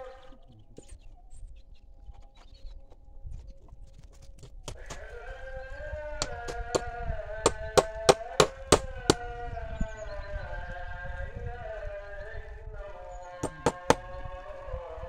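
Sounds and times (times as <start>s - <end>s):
hammer blows: 6.2s - 9.4s, 13.4s - 14.2s.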